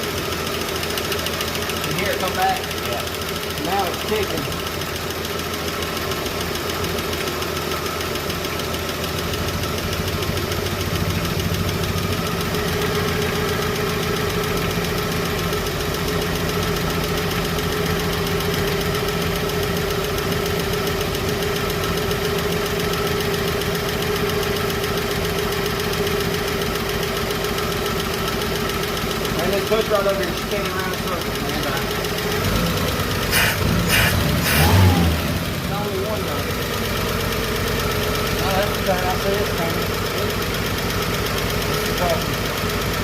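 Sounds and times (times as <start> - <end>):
engine idling: 0.0 - 43.0
rapid valvetrain ticking: 8.5 - 33.8.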